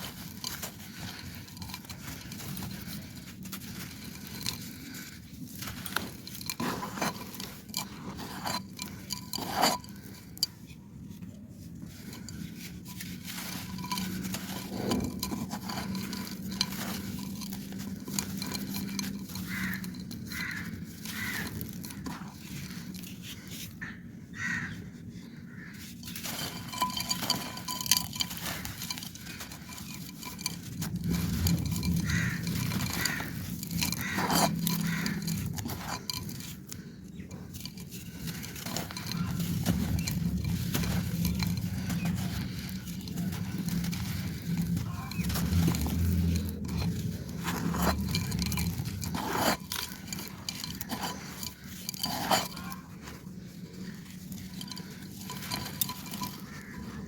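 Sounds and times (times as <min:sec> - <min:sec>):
clay pot crumbling: 0:00.0 - 0:10.6, 0:11.8 - 0:23.7, 0:26.0 - 0:57.0
low steady hum: 0:00.0 - 0:57.0.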